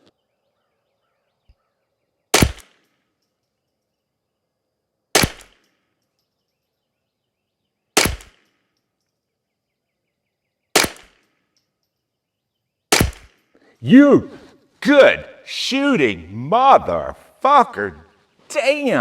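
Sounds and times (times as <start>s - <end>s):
rifle shots: 5.2s - 5.6s, 8.0s - 8.4s.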